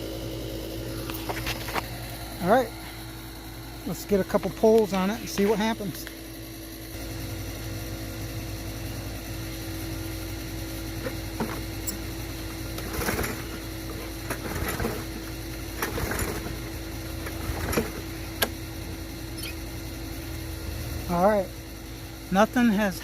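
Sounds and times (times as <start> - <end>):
lawn mower recoil starter pulls: 11.0 - 18.6.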